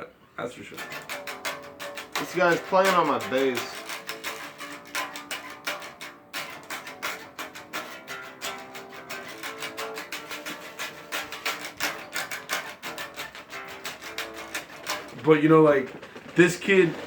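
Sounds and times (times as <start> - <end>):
guitar strumming: 0.6 - 17.0.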